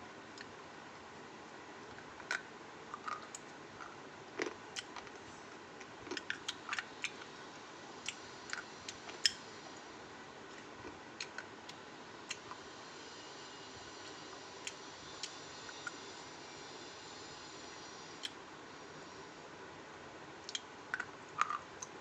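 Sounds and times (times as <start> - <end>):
crunchy food being chewed: 2.0 - 7.4.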